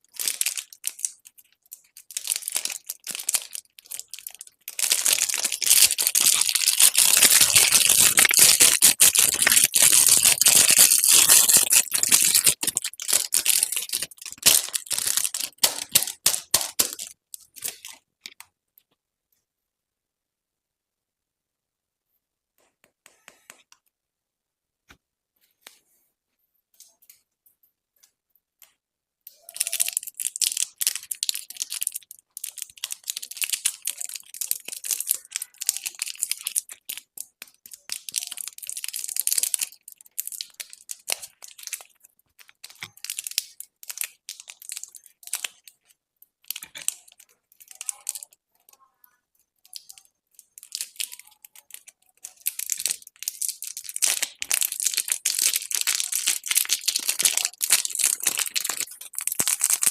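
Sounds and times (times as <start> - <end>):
candy wrappers crinkling and tearing: 0.0 - 18.4, 29.3 - 48.4, 49.4 - 59.9.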